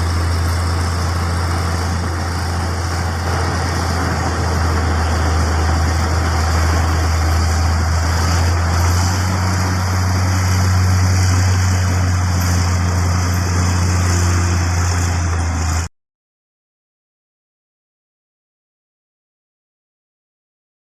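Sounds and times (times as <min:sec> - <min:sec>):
diesel machinery engine running: 0:00.0 - 0:15.9.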